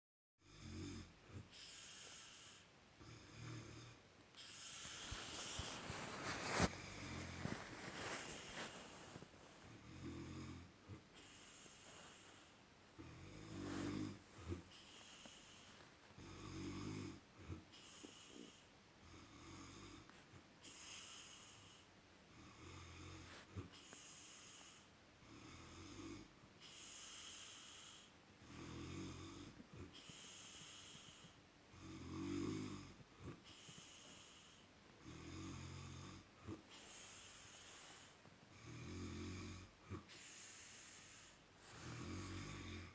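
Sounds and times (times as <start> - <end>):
man snoring: 0.4 - 5.0, 9.8 - 11.0, 13.0 - 14.7, 16.2 - 17.6, 27.0 - 31.2, 31.8 - 33.4, 34.0 - 36.6, 38.6 - 40.1, 41.8 - 42.9.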